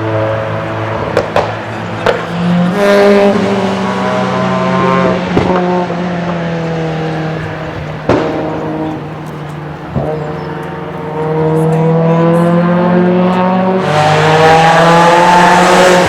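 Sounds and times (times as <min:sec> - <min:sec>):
race cars passing: 0:00.0 - 0:16.0
sharp exhaust crackles: 0:00.0 - 0:16.0.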